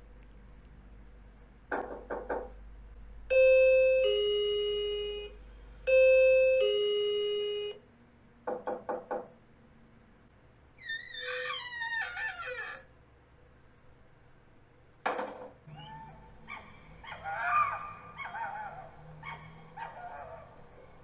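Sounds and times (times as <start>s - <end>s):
knocking on a door: 1.7s - 2.6s, 8.5s - 9.4s
two-tone doorbell chime: 5.9s - 7.8s.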